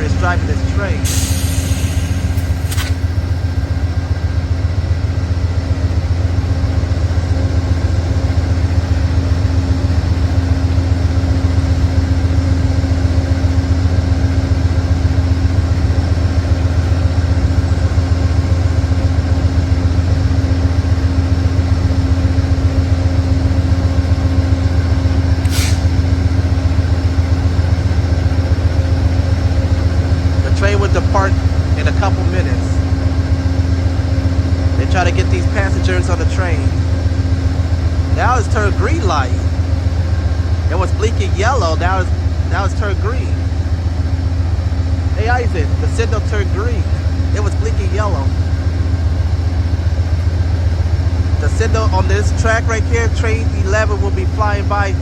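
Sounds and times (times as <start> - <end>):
diesel locomotives idling: 0.0 - 55.0
brief sharp high sounds: 25.4 - 25.9.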